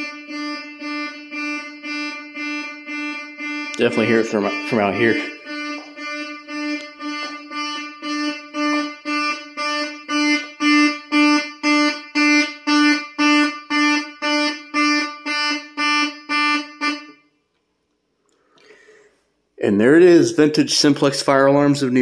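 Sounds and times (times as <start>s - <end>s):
synthesized fire alarm horn pulsing: 0.0s - 17.4s.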